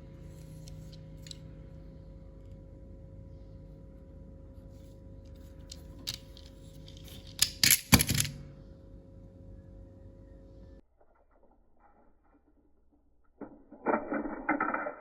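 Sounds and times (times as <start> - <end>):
steady low hum: 0.0 - 10.8.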